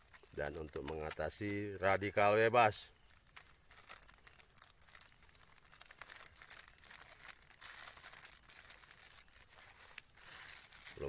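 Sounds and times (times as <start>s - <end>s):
faint crinkling and rustling: 0.0s - 11.0s
small clicks: 0.1s - 1.6s.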